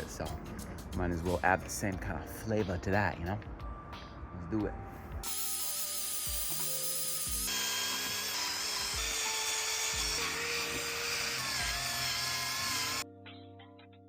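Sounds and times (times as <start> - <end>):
background music: 0.0 - 14.0
electric sander whining: 5.3 - 13.0.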